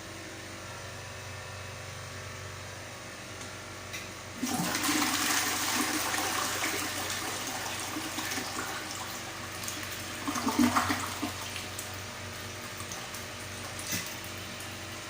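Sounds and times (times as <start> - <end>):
toilet flushing water rushing: 4.4 - 12.0.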